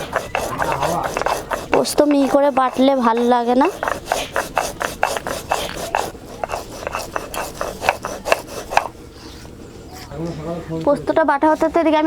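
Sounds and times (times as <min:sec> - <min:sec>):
seeds being ground by hand: 0:00.0 - 0:09.5.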